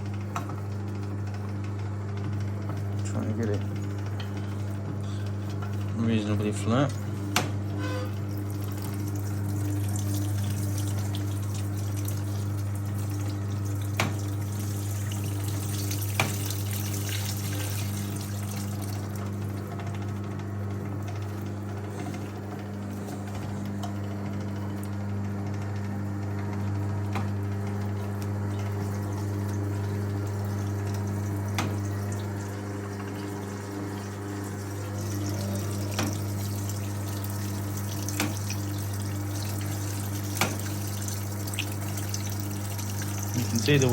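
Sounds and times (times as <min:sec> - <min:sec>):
washing machine motor humming: 0:00.0 - 0:43.9
water running off: 0:08.3 - 0:19.4, 0:28.2 - 0:43.9.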